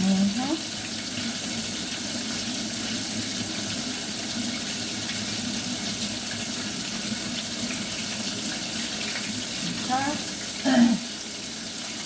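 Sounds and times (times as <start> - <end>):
faucet running into sink: 0.0 - 12.0.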